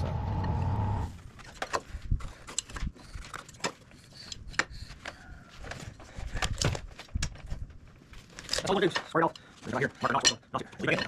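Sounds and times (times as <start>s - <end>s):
hand tools clicking and tapping: 1.6s - 7.4s.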